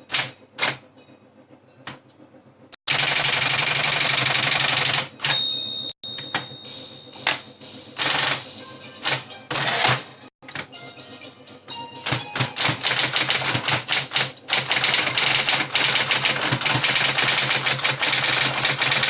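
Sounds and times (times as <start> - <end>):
typewriter motor hum: 0.0 - 0.8, 2.9 - 5.6, 8.0 - 10.6, 12.0 - 19.0
typewriter key strikes: 0.1 - 0.8, 2.9 - 6.6, 12.0 - 19.0
brief ringing tone: 5.2 - 7.3.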